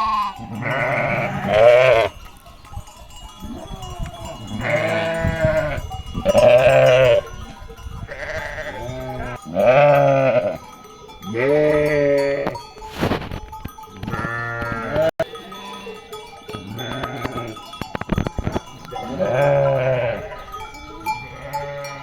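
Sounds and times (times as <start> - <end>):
sheep bleating: 0.0 - 2.2, 3.4 - 7.3, 8.1 - 10.6, 11.3 - 12.6, 14.1 - 15.9, 16.6 - 17.6, 18.9 - 20.5, 21.2 - 22.0.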